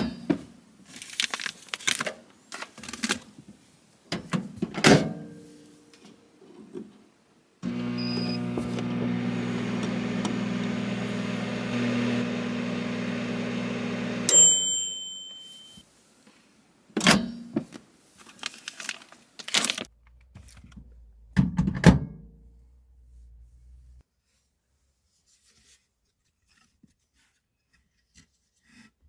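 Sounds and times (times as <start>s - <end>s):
microwave oven humming: 7.6s - 15.1s
microwave timer ding: 7.8s - 8.6s, 13.9s - 15.8s.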